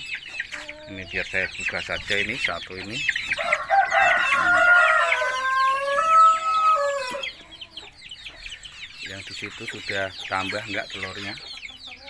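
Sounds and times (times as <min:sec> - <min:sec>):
hens clucking: 0:00.0 - 0:12.0
rooster crowing: 0:03.4 - 0:07.4.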